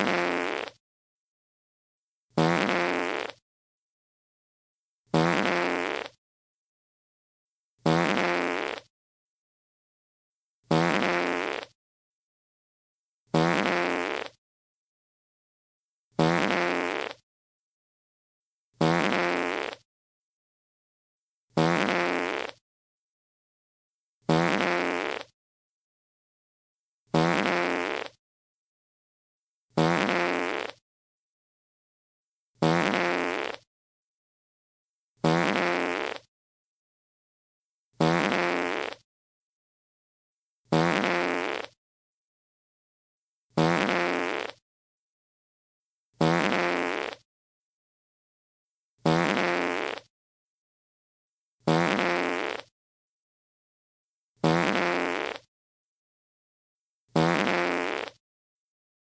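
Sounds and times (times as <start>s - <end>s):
fart sound effect: 0.0s - 0.8s, 2.4s - 3.4s, 5.1s - 6.2s, 7.8s - 8.9s, 10.7s - 11.8s, 13.3s - 14.4s, 16.2s - 17.2s, 18.8s - 19.9s, 21.6s - 22.6s, 24.3s - 25.4s, 27.1s - 28.2s, 29.8s - 30.8s, 32.6s - 33.7s, 35.2s - 36.3s, 38.0s - 39.1s, 40.7s - 41.8s, 43.6s - 44.6s, 46.2s - 47.3s, 49.0s - 50.1s, 51.7s - 52.7s, 54.4s - 55.5s, 57.2s - 58.2s.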